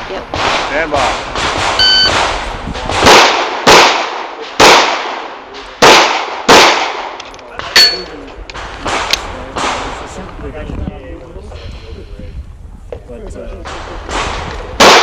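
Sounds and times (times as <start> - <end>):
pistol shots with echo: 0.3 - 10.0, 13.7 - 15.0.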